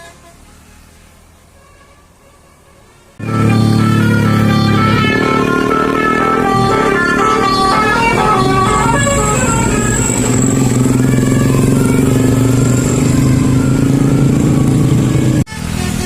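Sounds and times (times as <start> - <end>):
bus engine low drone: 2.9 - 16.0
background music: 3.2 - 10.8.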